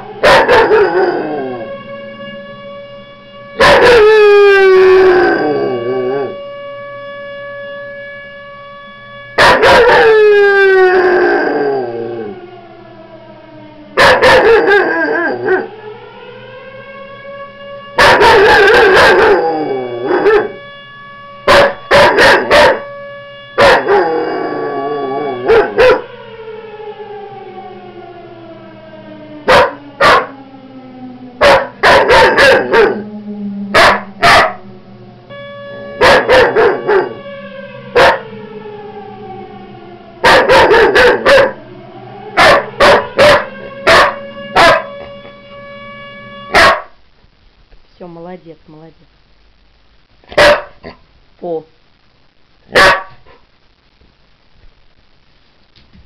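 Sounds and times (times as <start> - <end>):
dog howling: 0.0 - 1.8, 3.6 - 6.4, 9.4 - 12.5, 14.0 - 15.8, 18.0 - 20.6, 21.5 - 22.9, 23.6 - 26.1, 29.4 - 34.8, 36.0 - 37.2, 37.8 - 45.1
siren with falling tone: 0.0 - 47.1.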